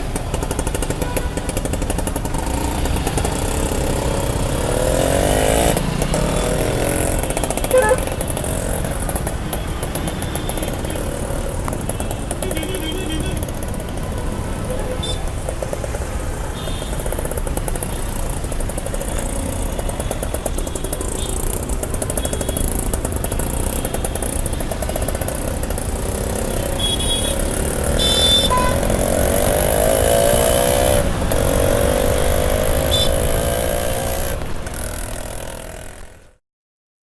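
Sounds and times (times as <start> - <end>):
traffic engine rumble: 0.0 - 36.3
engine revving: 2.1 - 9.0, 25.1 - 36.0
short horn beeps: 7.6 - 8.2, 26.8 - 28.9.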